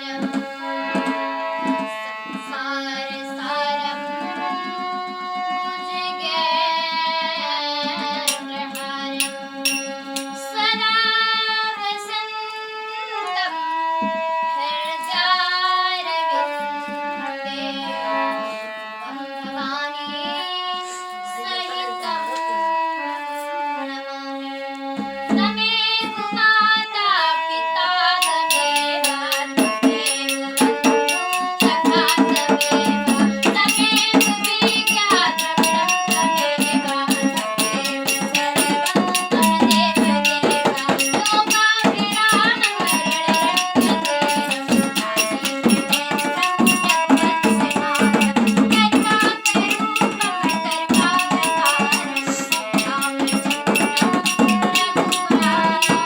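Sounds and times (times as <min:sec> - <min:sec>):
tabla: 0:00.0 - 0:11.7, 0:28.2 - 0:56.0
girl singing: 0:00.0 - 0:56.0.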